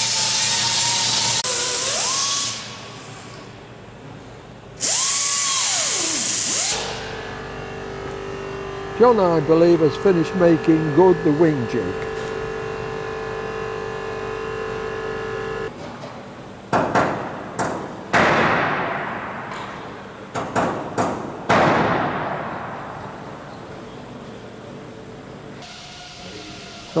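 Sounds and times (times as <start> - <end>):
hum of held tones: 6.7 - 15.7.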